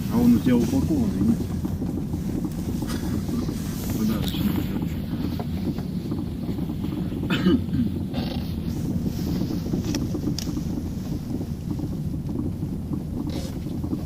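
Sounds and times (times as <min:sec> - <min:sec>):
vehicle rumble: 0:00.0 - 0:14.0
wind buffeting microphone: 0:00.0 - 0:14.0.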